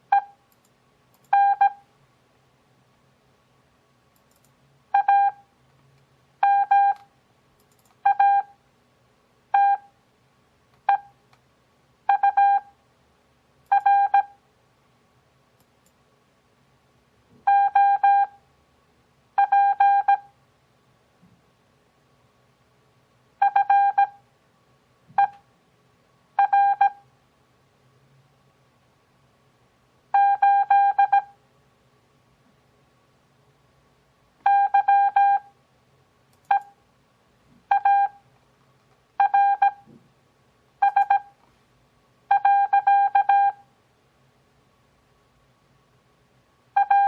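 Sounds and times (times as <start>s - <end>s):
morse code beeps: 0.1s - 0.4s, 1.3s - 1.8s, 5.0s - 5.4s, 6.4s - 7.0s, 8.0s - 8.5s, 9.6s - 9.9s, 12.1s - 12.7s, 13.7s - 14.4s, 17.5s - 18.4s, 19.4s - 20.3s, 23.4s - 24.2s, 26.4s - 27.0s, 30.2s - 31.3s, 34.5s - 35.5s, 37.7s - 38.2s, 39.2s - 39.8s, 40.8s - 41.3s, 42.3s - 43.6s, 46.8s - 47.0s.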